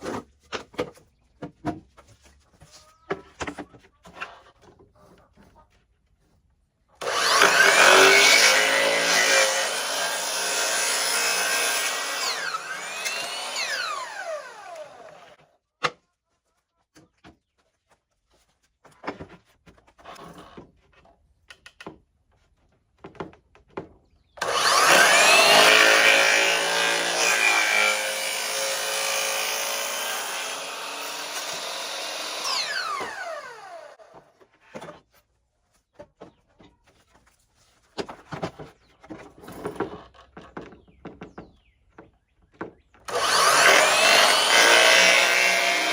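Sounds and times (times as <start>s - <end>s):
electric saw cutting wood: 7.0s - 15.4s, 24.4s - 34.1s, 43.1s - 45.9s.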